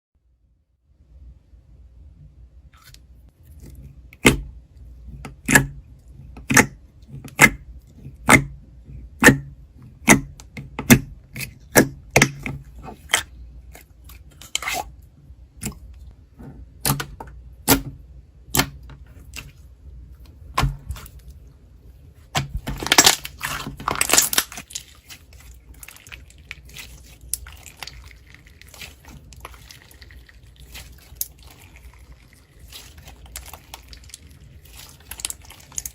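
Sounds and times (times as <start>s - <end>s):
slime squishing with wet pops: 22.3s - 35.9s
crinkly rustling: 22.6s - 35.9s.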